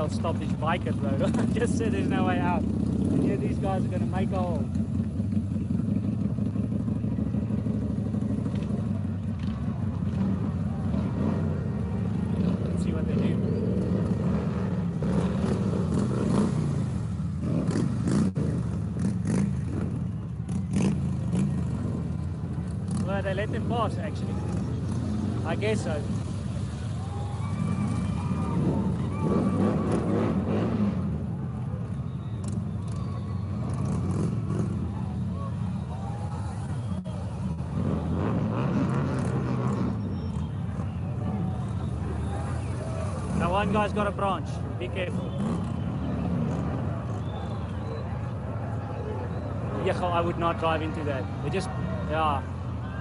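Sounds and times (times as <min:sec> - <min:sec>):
vehicle engines droning: 0:00.0 - 0:53.0
faint voices: 0:19.9 - 0:53.0.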